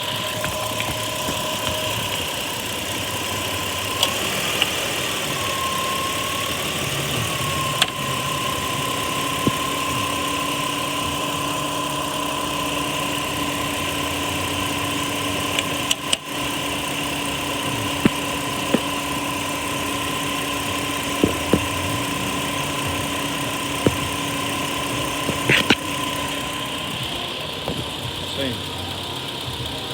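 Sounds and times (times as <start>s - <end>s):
sharp clicks and knocks: 0.0s - 4.8s, 12.4s - 28.4s
car engine idling: 0.0s - 29.9s
compressor whine: 0.0s - 29.9s.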